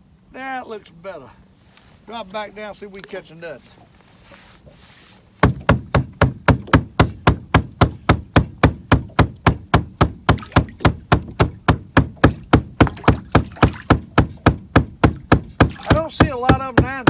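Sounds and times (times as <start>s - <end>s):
sharp rapid knocking: 5.4s - 17.0s.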